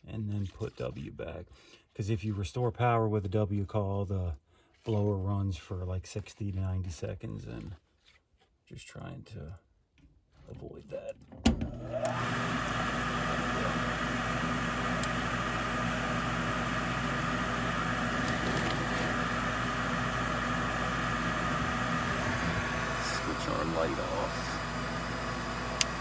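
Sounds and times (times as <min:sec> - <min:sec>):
furnace inducer motor humming: 0:11.4 - 0:26.0.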